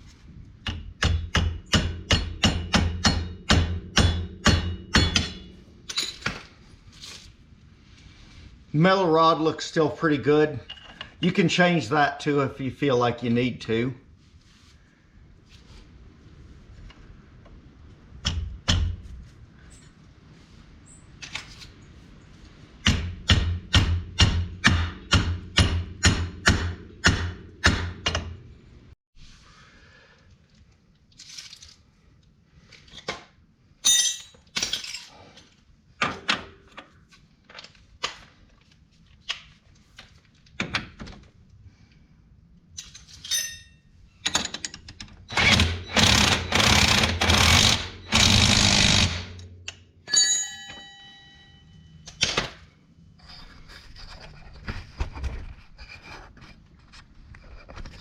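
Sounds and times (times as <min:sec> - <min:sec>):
tools clanking against metal: 0:00.6 - 0:06.5, 0:10.6 - 0:11.2, 0:33.8 - 0:36.9, 0:42.8 - 0:46.6, 0:49.4 - 0:52.6
power tool bursts: 0:45.3 - 0:49.4.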